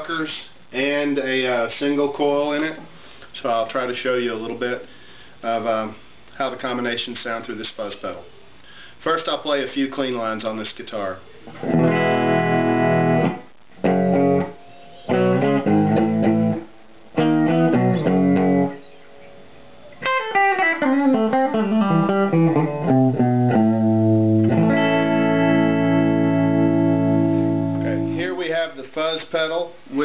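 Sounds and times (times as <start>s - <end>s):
clean electric guitar: 11.5s - 28.2s.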